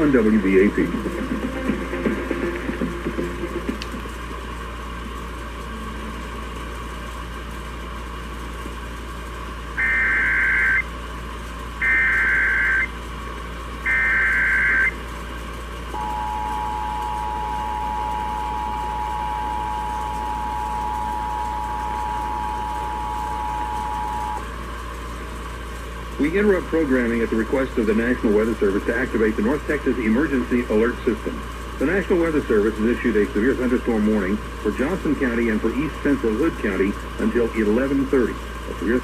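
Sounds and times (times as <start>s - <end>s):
radio hiss: 0.0s - 4.1s, 9.8s - 10.9s, 11.8s - 12.9s, 13.9s - 15.0s, 26.2s - 39.0s
two-tone attention signal: 9.8s - 10.8s, 11.8s - 12.9s, 13.9s - 14.9s, 16.0s - 24.5s
buzzy data tones: 9.8s - 10.9s, 11.8s - 13.0s, 13.8s - 15.0s, 15.9s - 24.5s.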